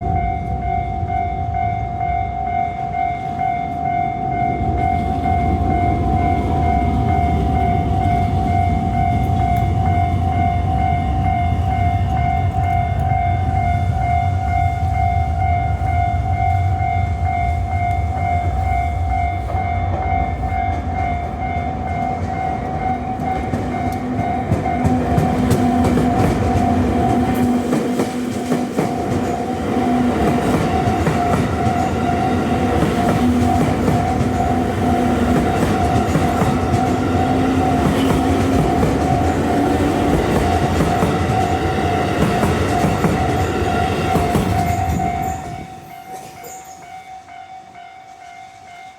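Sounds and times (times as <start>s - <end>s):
train rumble and wheel clatter: 0.0s - 48.9s
level crossing bell ringing: 40.6s - 48.9s.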